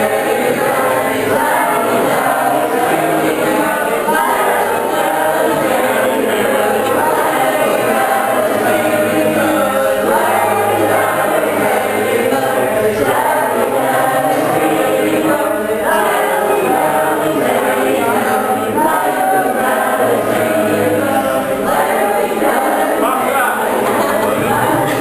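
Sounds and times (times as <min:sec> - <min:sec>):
choir singing: 0:00.0 - 0:25.0.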